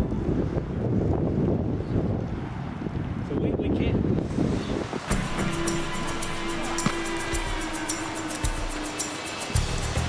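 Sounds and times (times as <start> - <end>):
held synth note: 5.1 - 10.0
light percussion ticking: 5.1 - 10.0.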